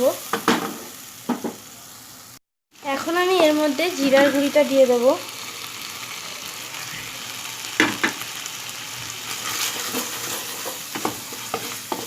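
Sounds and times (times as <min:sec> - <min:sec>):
paste sizzling in hot oil: 0:00.0 - 0:12.0
spatula scraping pan: 0:09.3 - 0:12.0.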